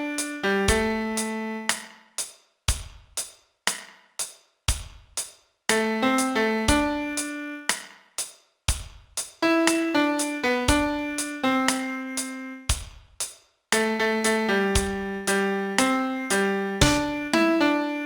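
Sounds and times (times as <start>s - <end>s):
piano melody: 0.0s - 1.7s, 5.7s - 7.7s, 9.4s - 12.7s, 13.8s - 18.0s
steady beat of short hits: 16.8s - 17.3s.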